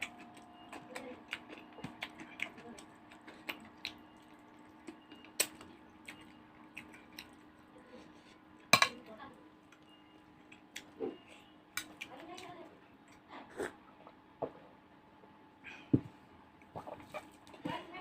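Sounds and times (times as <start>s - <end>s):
person chewing and smacking lips: 0.0s - 8.7s, 9.6s - 12.3s.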